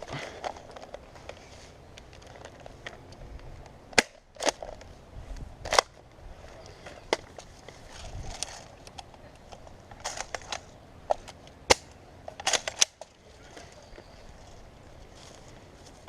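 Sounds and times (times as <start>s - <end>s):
airsoft gun cracks: 11.7s - 13.0s
footsteps on woodland ground: 13.2s - 16.0s.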